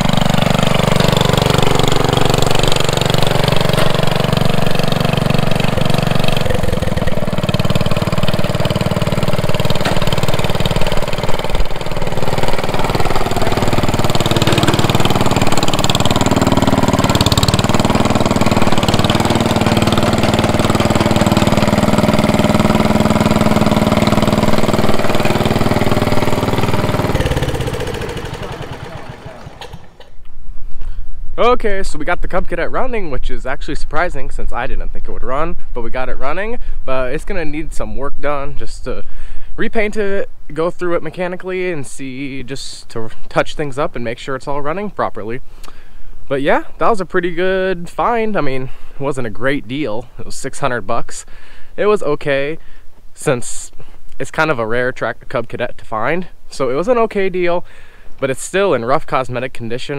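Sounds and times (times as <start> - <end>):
lawn tractor engine running: 0.0 - 30.3.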